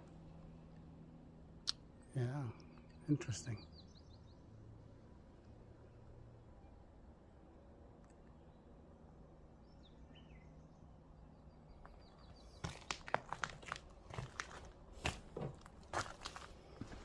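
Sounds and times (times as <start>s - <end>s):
footsteps crunching over debris: 11.9s - 17.0s.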